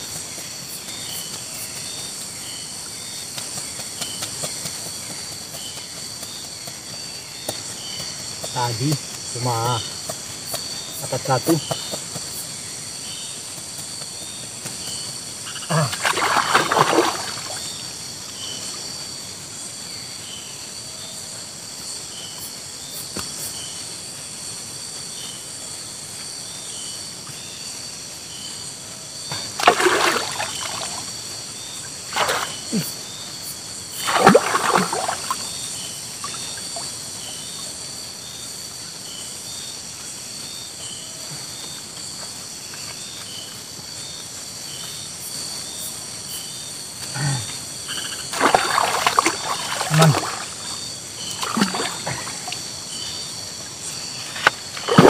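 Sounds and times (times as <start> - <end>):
forest insects chorus: 0.0 - 55.0
short insect chirp: 0.0 - 55.0
water splashing: 15.7 - 17.8, 29.4 - 31.3, 31.9 - 32.9, 34.0 - 37.1, 48.2 - 52.9, 54.4 - 55.0.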